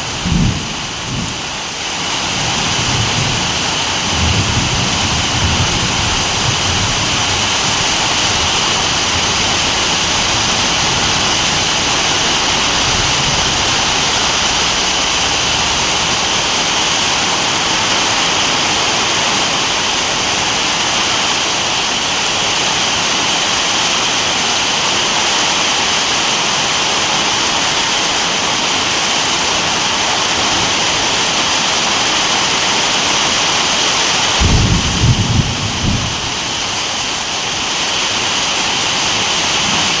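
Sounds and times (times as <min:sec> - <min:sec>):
heavy rain falling: 0:00.0 - 0:40.0
low rumble: 0:05.9 - 0:17.8.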